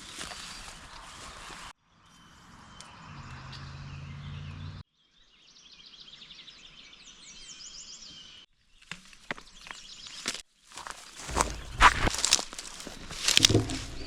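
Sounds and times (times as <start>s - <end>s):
outdoor background noise: 0.0s - 5.6s, 8.0s - 14.0s
small birds chirping: 0.0s - 14.0s
sharp knocks or clicks: 11.3s - 14.0s.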